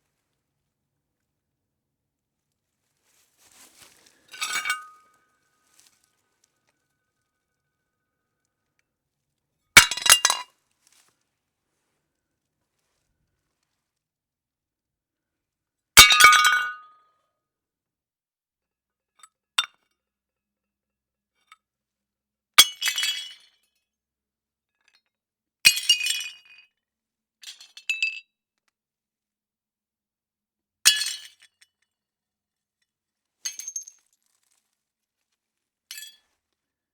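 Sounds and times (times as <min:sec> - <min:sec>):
tinkle of broken pieces: 0:04.4 - 0:05.1.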